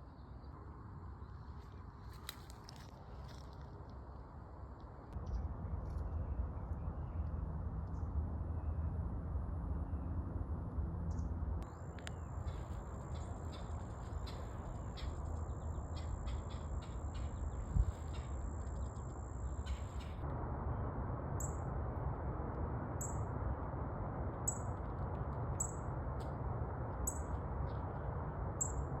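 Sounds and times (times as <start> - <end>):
low outdoor rumble: 0.4 - 29.0
birds chirping: 11.7 - 20.2.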